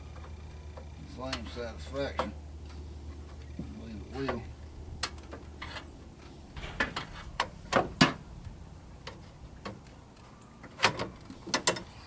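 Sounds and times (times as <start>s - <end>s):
low steady hum: 6.4s - 11.4s.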